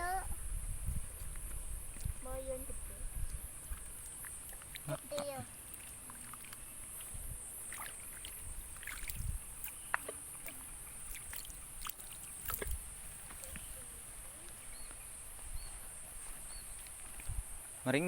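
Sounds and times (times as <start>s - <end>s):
insects chirping: 0.0s - 18.0s
water sloshing and splashing: 3.6s - 13.8s.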